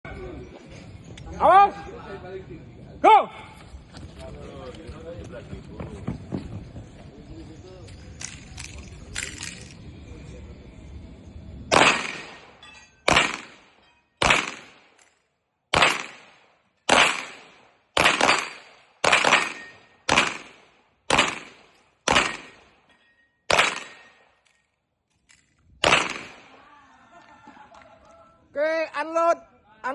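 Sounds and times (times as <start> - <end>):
pistol shots: 11.7 - 15.0, 15.7 - 22.8, 23.5 - 24.3, 25.8 - 26.5.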